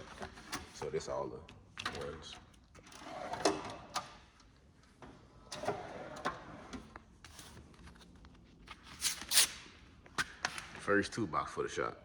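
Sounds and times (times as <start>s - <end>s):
drawers sliding on runners: 2.8s - 4.2s, 5.0s - 7.6s.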